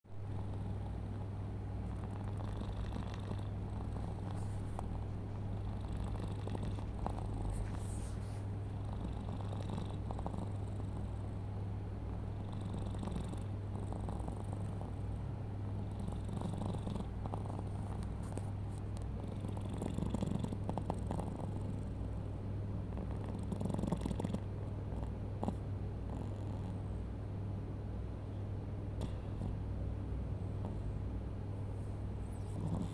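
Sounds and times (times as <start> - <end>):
cat snoring: 0.3 - 1.2, 1.8 - 11.3, 12.4 - 18.0, 19.2 - 22.1, 22.9 - 27.0, 29.0 - 29.6, 30.4 - 31.0, 32.2 - 32.9.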